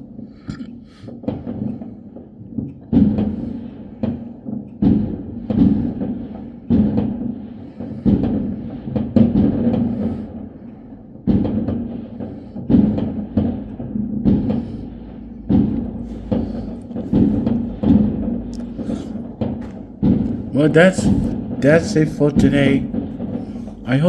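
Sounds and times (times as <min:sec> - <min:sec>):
fireworks booming: 0:11.3 - 0:24.0.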